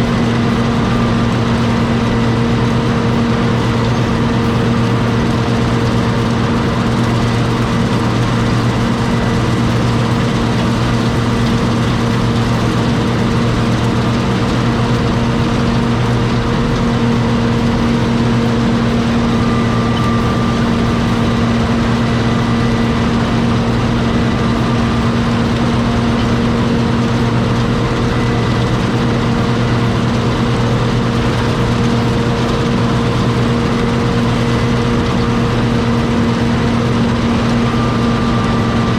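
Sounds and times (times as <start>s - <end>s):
diesel engine running steadily: 0.0s - 38.9s.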